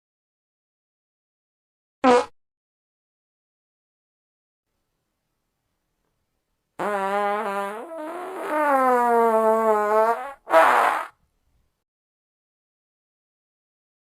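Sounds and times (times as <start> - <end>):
fart sound effect: 2.0 - 2.3, 6.8 - 11.2.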